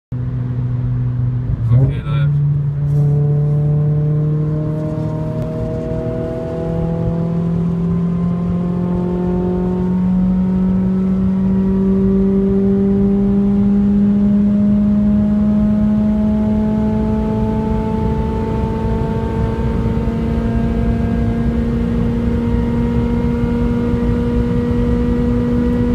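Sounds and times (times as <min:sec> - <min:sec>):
road noise rumble: 0:00.1 - 0:25.9
car engine accelerating: 0:00.2 - 0:25.9.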